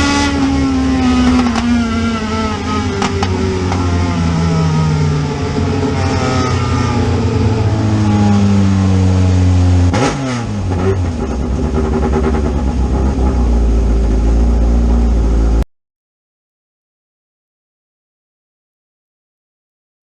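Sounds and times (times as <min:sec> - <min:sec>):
car engine revving: 0:00.0 - 0:15.6.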